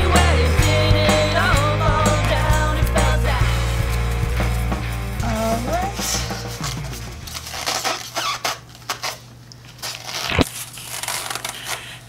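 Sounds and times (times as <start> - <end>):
styrofoam squeaks and scrapes: 6.5 - 12.0.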